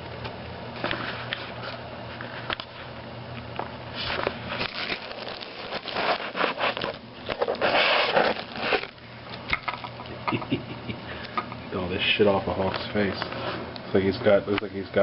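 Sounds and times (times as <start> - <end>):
packaging crinkling and tearing: 4.1 - 9.0.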